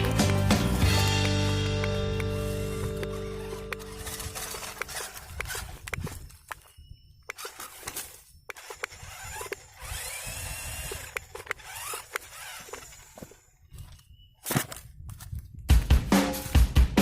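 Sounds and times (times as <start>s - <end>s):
tyres crunching over rough ground: 0.0s - 16.7s
small electric motor whining: 2.2s - 14.1s.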